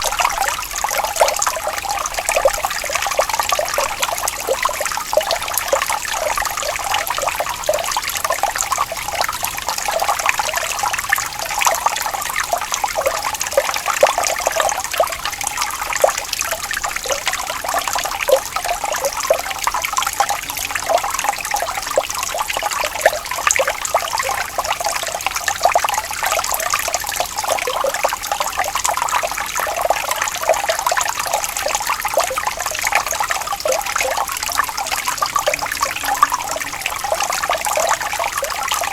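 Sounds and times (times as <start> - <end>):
water trickling and babbling: 0.0 - 38.9.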